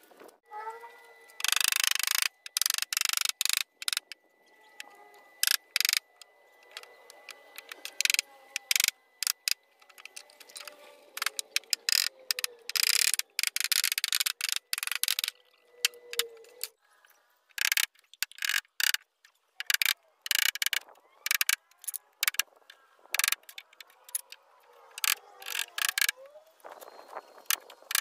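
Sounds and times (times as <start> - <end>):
faint wavering tone: 0.4 - 13.4, 14.4 - 17.3.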